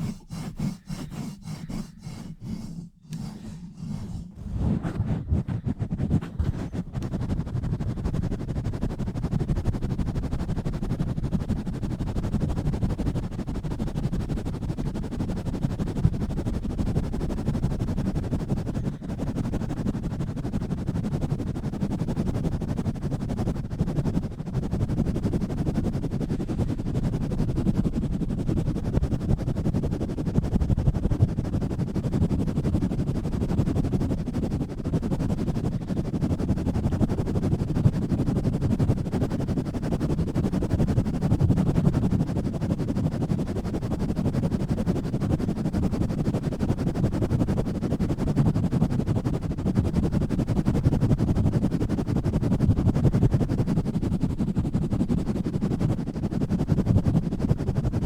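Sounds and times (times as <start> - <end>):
hands rubbing on microphone: 0.0 - 13.0, 15.7 - 47.7.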